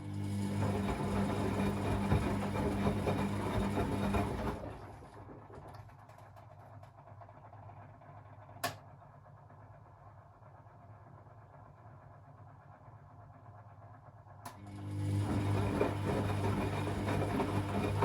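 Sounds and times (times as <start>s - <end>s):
washing machine churning: 0.0s - 6.2s, 14.6s - 18.0s.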